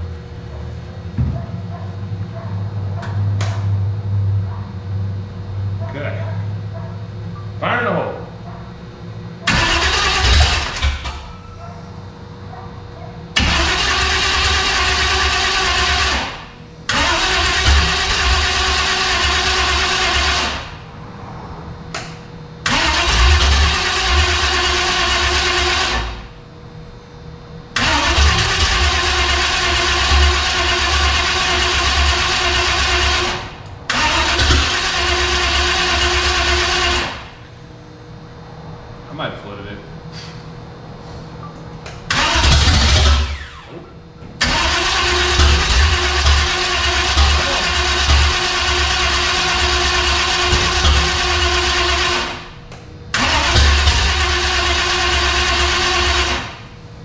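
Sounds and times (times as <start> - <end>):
engine cranking by starter: 9.4 - 11.5, 13.4 - 20.9, 21.9 - 26.3, 27.7 - 37.4, 41.8 - 56.8.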